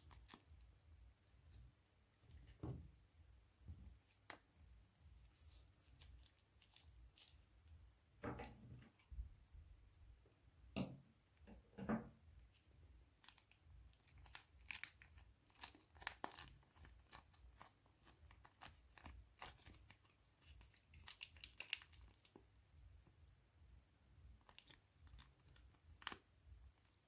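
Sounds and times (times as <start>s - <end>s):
plastic bags crinkling: 24.4s - 26.2s.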